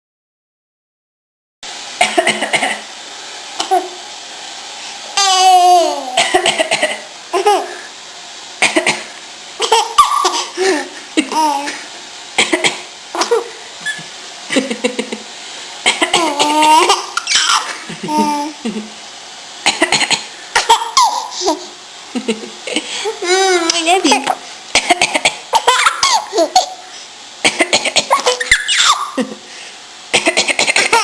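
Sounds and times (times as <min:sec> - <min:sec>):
woman coughing: 0:02.0 - 0:02.8, 0:06.2 - 0:07.0, 0:08.6 - 0:09.1, 0:12.4 - 0:13.4, 0:15.9 - 0:16.6, 0:19.7 - 0:20.3, 0:24.8 - 0:25.6, 0:27.4 - 0:28.3, 0:30.1 - 0:31.0
baby laughing: 0:03.6 - 0:04.0, 0:05.2 - 0:07.8, 0:09.6 - 0:14.8, 0:15.8 - 0:18.9, 0:19.7 - 0:21.8, 0:24.8 - 0:26.8, 0:27.4 - 0:29.3, 0:30.1 - 0:31.0.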